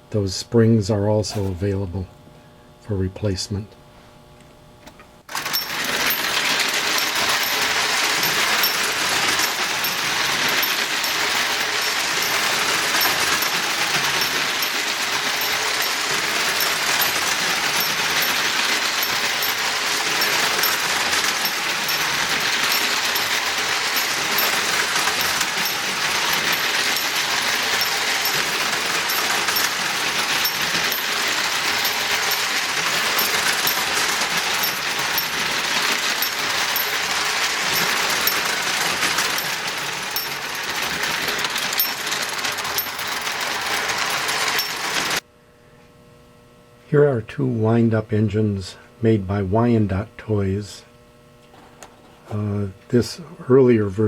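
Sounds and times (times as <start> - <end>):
clockwork gears whirring: 5.3 - 45.2
small bell ringing: 5.3 - 45.2.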